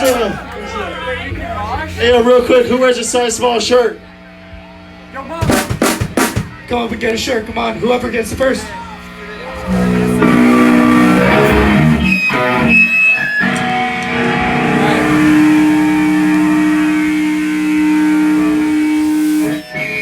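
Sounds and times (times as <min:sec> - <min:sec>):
electric guitar note ringing: 0:00.0 - 0:05.6, 0:08.8 - 0:20.0
electric guitar chords and notes: 0:09.0 - 0:20.0.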